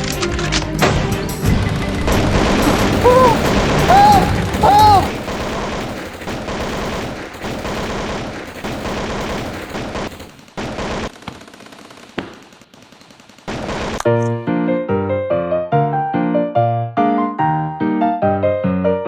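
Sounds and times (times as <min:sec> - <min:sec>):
automatic gunfire: 0:02.3 - 0:14.2.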